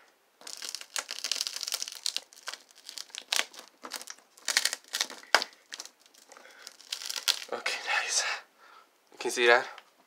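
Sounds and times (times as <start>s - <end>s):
sharp crack: 0.4s - 7.6s
crinkling and crackling: 0.4s - 7.7s.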